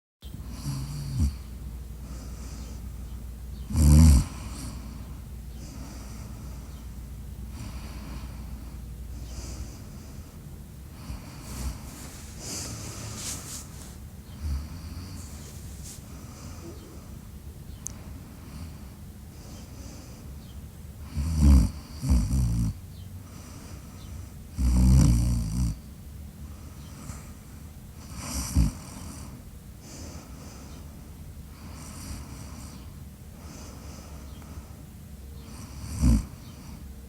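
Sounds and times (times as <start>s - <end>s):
loud snort: 0.5s - 1.5s, 3.7s - 5.0s, 21.1s - 22.8s, 24.6s - 25.8s, 28.1s - 29.2s, 35.6s - 36.5s
person snoring: 0.5s - 1.5s, 3.7s - 6.6s, 21.1s - 22.8s, 24.6s - 25.8s, 35.6s - 36.4s.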